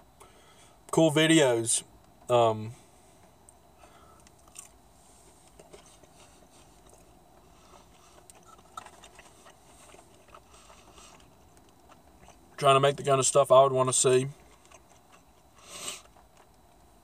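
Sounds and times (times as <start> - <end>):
person chewing: 4.1 - 12.6, 14.3 - 16.9.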